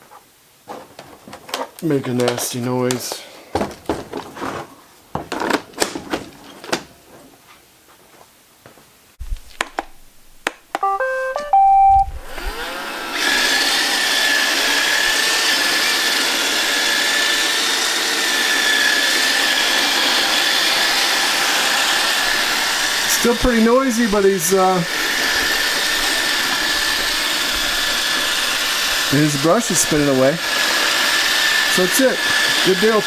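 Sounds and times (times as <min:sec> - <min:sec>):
stepped beep melody: 0:10.8 - 0:12.4
robot vacuum motor whine: 0:10.9 - 0:33.0.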